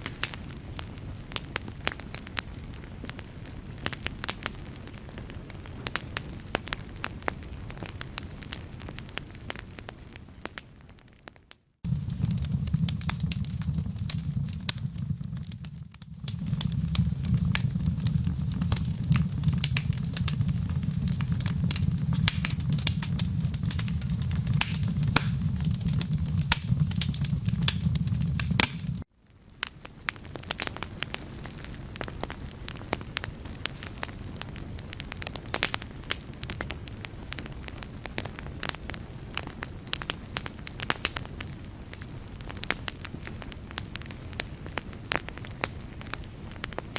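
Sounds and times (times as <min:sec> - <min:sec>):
wood fire crackling: 0:00.0 - 0:46.9
low rumble: 0:11.9 - 0:29.0.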